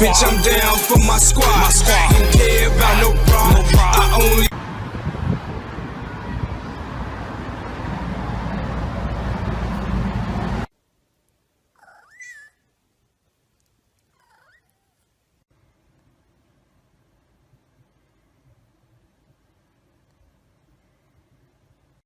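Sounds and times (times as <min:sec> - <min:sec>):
loud hip-hop music: 0:00.0 - 0:04.5
cat meowing: 0:14.2 - 0:15.0.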